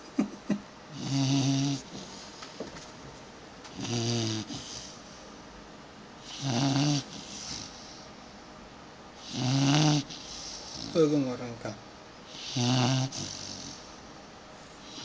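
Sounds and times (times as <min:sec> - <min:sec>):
puppy snoring: 0:00.9 - 0:02.4, 0:03.7 - 0:05.2, 0:06.2 - 0:08.1, 0:09.2 - 0:11.3, 0:12.2 - 0:14.1, 0:14.8 - 0:15.0.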